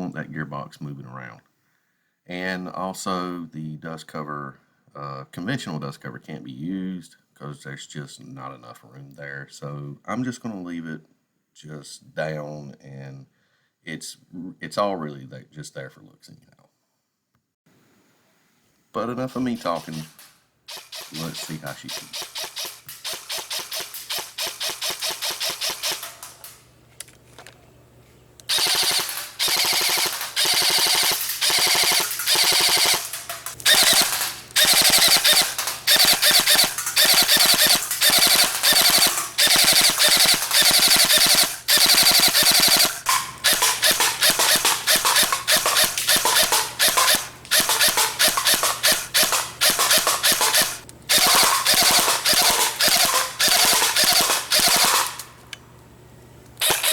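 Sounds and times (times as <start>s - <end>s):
airsoft rifle full-auto bursts: 19.3s - 26.7s, 28.5s - 55.5s, 56.6s - 56.9s.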